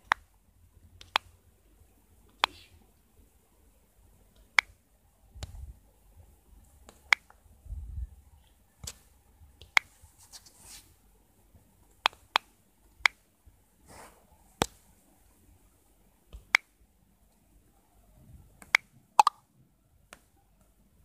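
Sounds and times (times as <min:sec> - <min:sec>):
sharp single clicks: 0:18.6 - 0:19.4.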